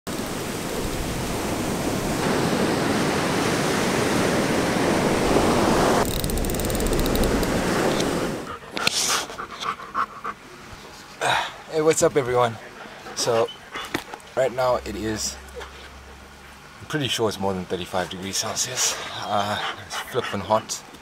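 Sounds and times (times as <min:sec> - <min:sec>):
surf rushing: 0:00.1 - 0:08.5
wind at the shore: 0:00.1 - 0:09.0.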